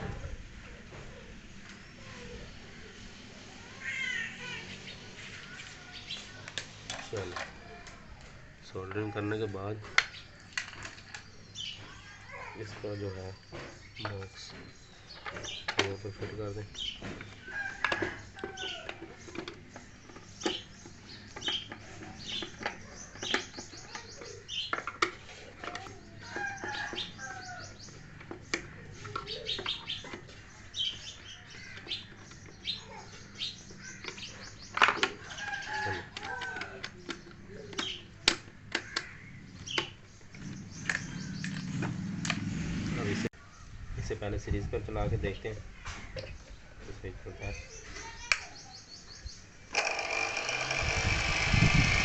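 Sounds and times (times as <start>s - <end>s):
small birds chirping: 0.0s - 52.0s
plastic parts clicking and knocking: 6.4s - 12.0s, 12.6s - 27.1s, 33.7s - 42.4s.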